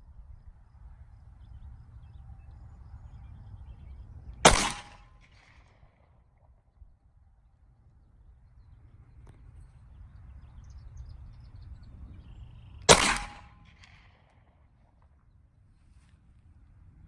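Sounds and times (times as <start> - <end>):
pistol shot with echo: 4.4 - 6.0, 12.9 - 14.5.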